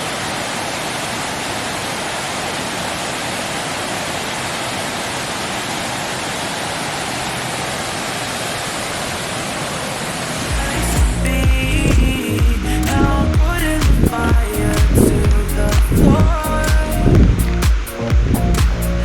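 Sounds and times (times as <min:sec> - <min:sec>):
waterfall rushing: 0:00.0 - 0:19.0
music with heavy bass: 0:10.5 - 0:19.0.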